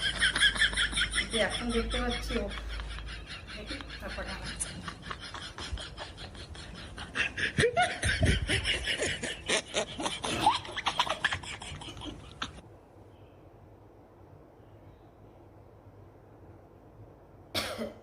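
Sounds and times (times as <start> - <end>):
woman laughing: 0.0 - 12.6.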